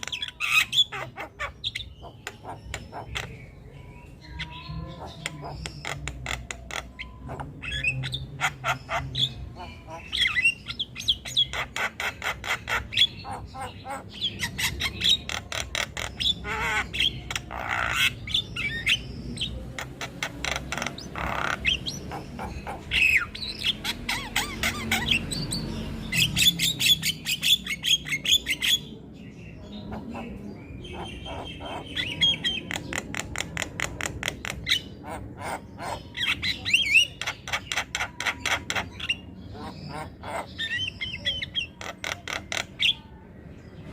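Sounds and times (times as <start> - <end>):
mynas chattering and squawking: 0.0 - 43.9.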